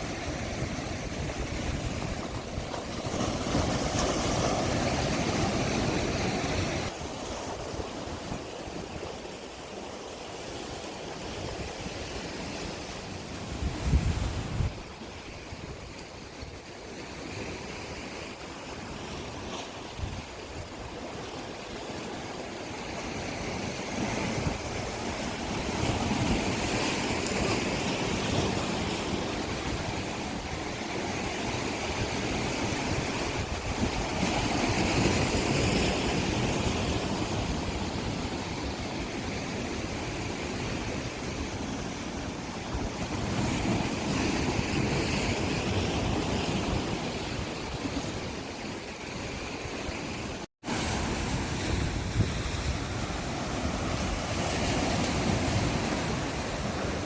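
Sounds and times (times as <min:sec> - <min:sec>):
sea waves rolling and washing: 0:00.0 - 0:57.0.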